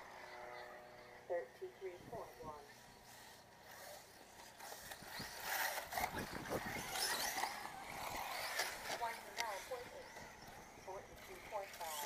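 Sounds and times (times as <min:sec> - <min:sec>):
high-pitched electric motor whine: 0:00.0 - 0:12.0
tyre and chassis noise: 0:02.8 - 0:12.0.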